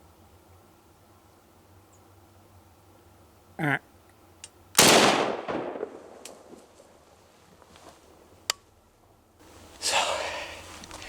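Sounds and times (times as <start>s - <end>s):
short voice-like call: 3.6s - 3.9s
rifle shot: 4.8s - 6.6s.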